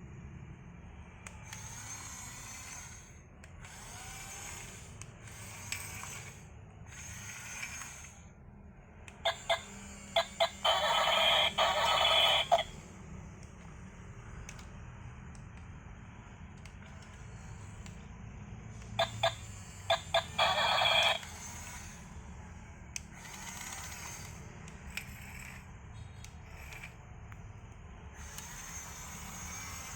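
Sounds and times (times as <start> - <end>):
toy electronic beeps: 9.2 - 12.7, 19.0 - 21.3.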